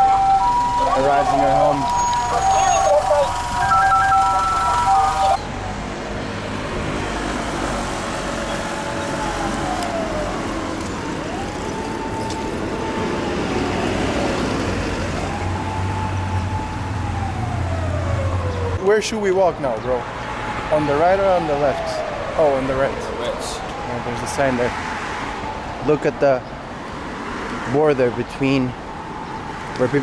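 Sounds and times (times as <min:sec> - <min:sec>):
short electronic melody: 0:00.0 - 0:05.4
siren wailing: 0:00.0 - 0:05.9, 0:08.3 - 0:18.8, 0:20.7 - 0:24.3
street traffic: 0:00.0 - 0:30.0.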